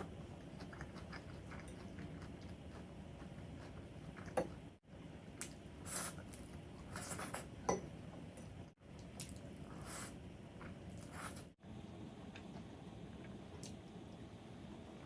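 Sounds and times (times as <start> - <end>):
wet chewing and smacking: 0.0 - 4.8.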